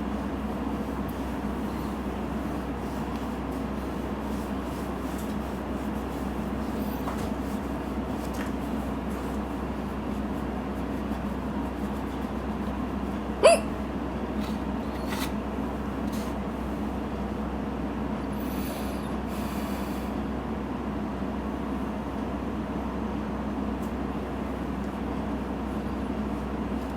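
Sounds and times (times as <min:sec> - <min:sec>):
steady low hum: 0:00.0 - 0:20.0
woman hiccuping: 0:13.4 - 0:13.8.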